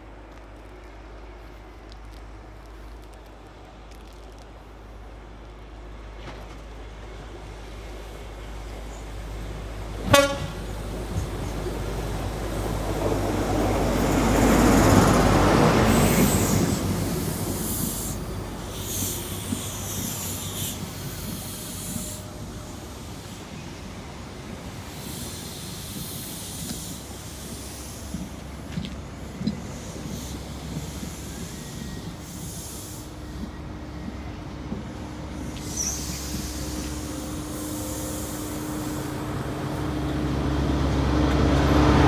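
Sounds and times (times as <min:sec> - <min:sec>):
train passing rumble: 0:00.0 - 0:42.0
train horn toot: 0:10.0 - 0:11.2.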